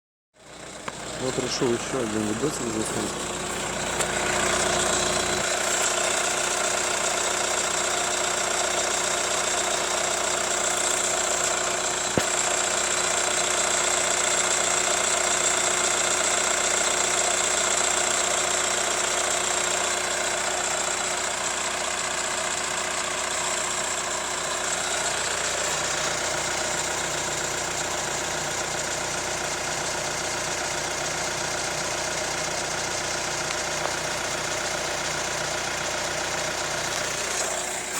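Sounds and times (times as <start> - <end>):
diesel engine idling with knock: 0.4 - 37.9.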